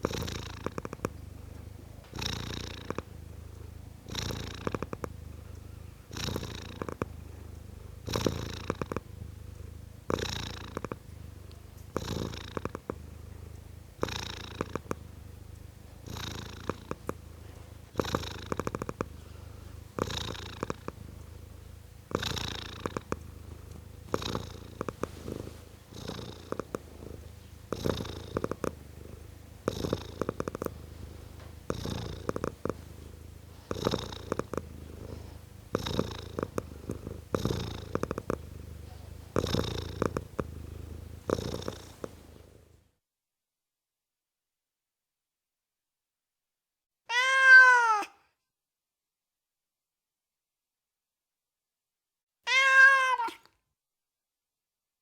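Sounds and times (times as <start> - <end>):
cat purring: 0.0 - 43.0.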